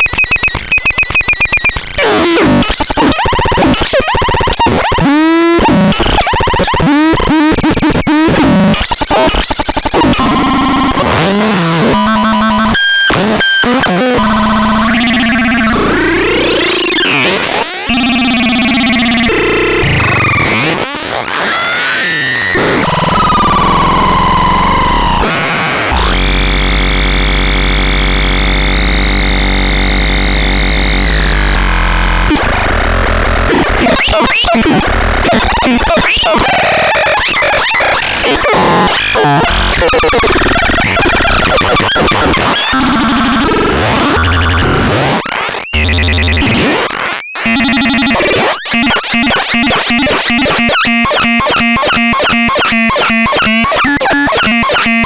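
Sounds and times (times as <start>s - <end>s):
synthesizer electronic noise: 0.0s - 55.0s
harsh ragged synth noise: 22.3s - 35.9s
synthesizer buzzing drone: 22.6s - 35.3s, 45.8s - 46.6s, 47.5s - 55.0s.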